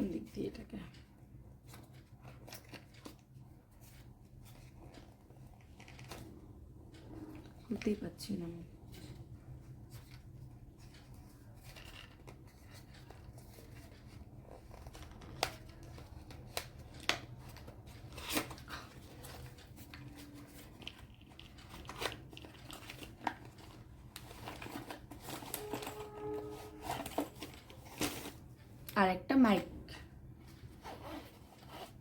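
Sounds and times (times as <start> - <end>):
packaging rustling and crinkling: 11.6 - 28.5.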